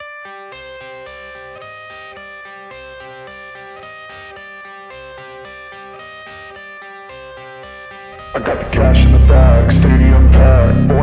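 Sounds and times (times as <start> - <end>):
guitar intro music: 7.1 - 11.0.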